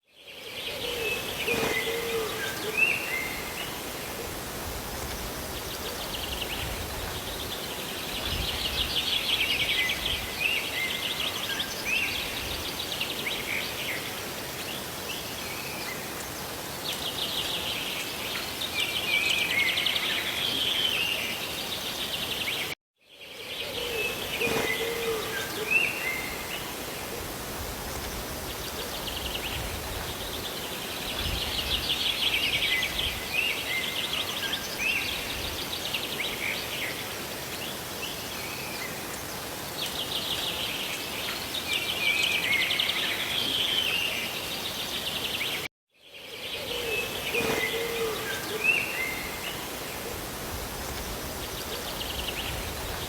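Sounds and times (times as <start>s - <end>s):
birds chirping and trilling: 0.7s - 4.2s, 23.3s - 27.2s, 28.0s - 52.9s
falling water and rain: 1.2s - 22.7s, 24.1s - 45.7s, 47.1s - 53.0s.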